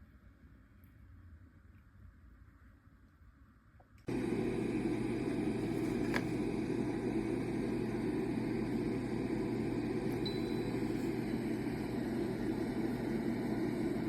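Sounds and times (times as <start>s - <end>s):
humidifier whirring: 4.0s - 14.0s
low hum: 4.0s - 14.0s.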